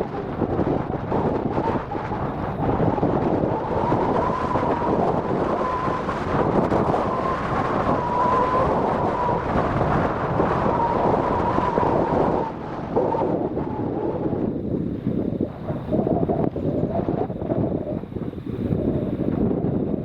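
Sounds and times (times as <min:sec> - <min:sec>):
high engine whine: 0:00.0 - 0:20.0
jet engines roaring: 0:00.0 - 0:20.0.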